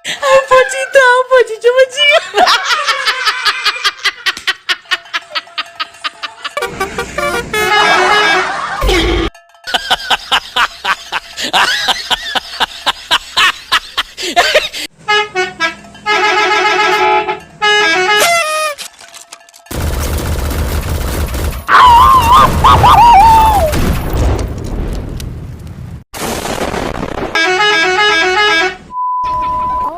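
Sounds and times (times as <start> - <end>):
multi-tone bus horn tune: 6.6 - 8.8, 15.0 - 18.8, 27.4 - 29.0.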